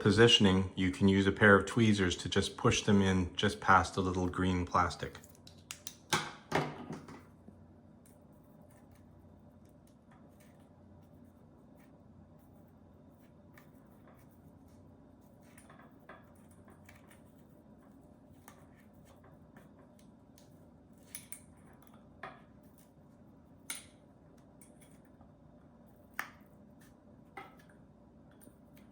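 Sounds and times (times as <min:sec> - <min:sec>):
tweezers clicking and tapping: 0:05.3 - 0:06.2.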